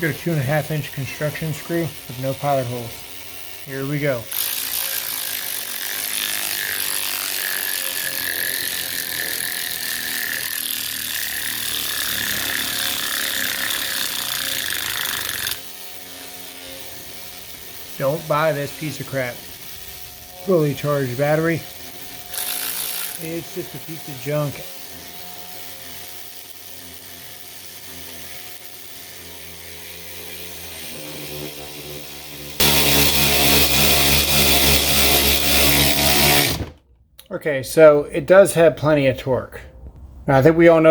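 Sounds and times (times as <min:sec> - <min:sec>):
cordless ratchet motor whining: 0:00.0 - 0:36.8
loud power tool: 0:00.0 - 0:36.8.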